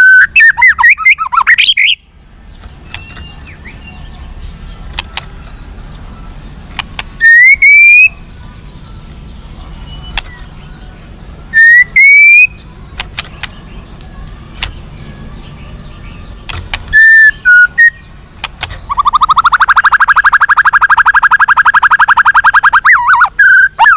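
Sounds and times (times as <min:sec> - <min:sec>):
bird singing whistled phrases: 0:00.0 - 0:02.1, 0:07.2 - 0:12.7, 0:13.4 - 0:18.2, 0:18.9 - 0:23.9
bird rapid trill: 0:00.0 - 0:23.9.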